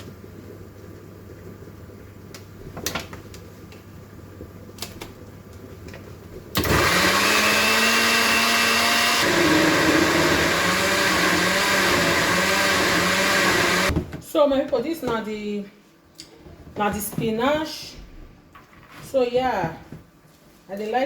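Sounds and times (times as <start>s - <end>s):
electric blender motor running: 6.6s - 13.9s.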